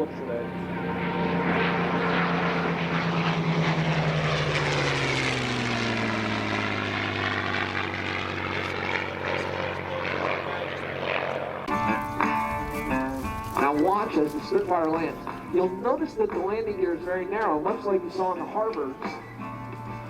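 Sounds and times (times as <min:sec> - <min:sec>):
propeller plane flying past: 0:00.0 - 0:20.0.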